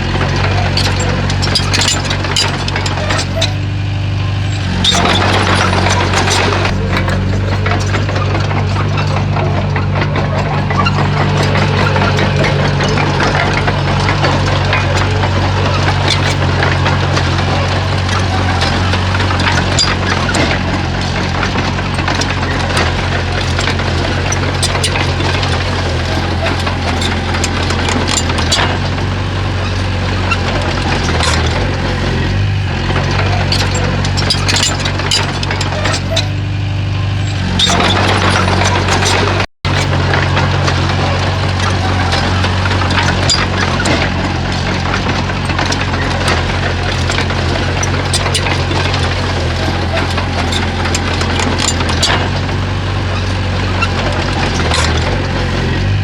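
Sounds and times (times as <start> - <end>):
sharp metal clanks: 0.0 - 36.5
heavy diesel engine running: 0.0 - 56.0.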